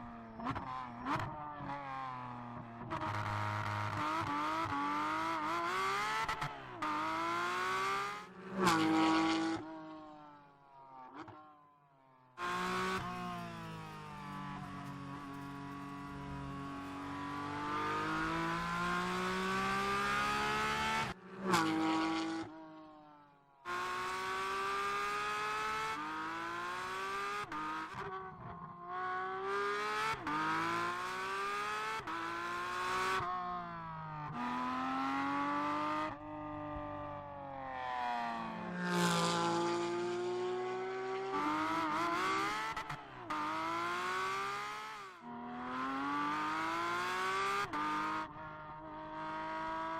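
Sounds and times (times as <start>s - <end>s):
race car engine revving: 12.4s - 22.4s.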